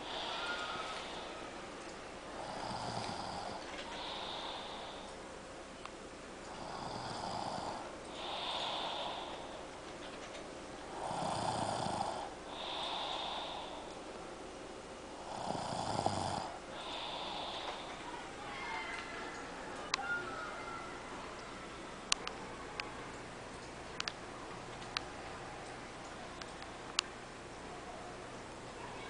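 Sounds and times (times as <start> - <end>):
person snoring: 0.0 - 1.5, 2.3 - 5.1, 6.5 - 9.6, 10.9 - 13.9, 15.2 - 18.0.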